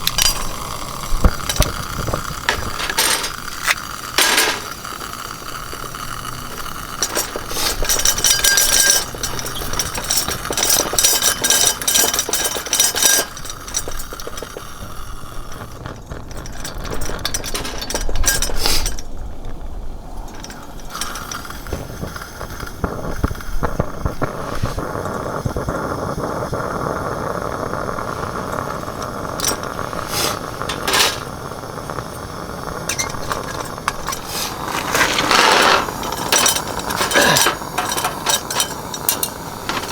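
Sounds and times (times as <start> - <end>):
hard objects clinking: 0.0 - 19.1, 28.0 - 39.9.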